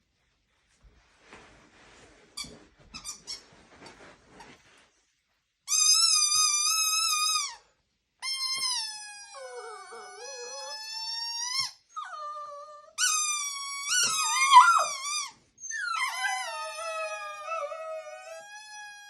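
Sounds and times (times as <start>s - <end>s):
dog howling: 14.0s - 15.0s.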